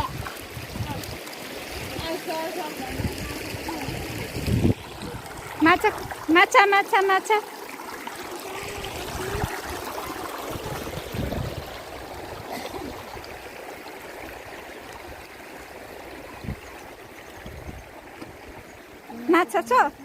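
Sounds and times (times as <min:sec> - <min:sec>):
river water flowing: 0:00.0 - 0:20.0.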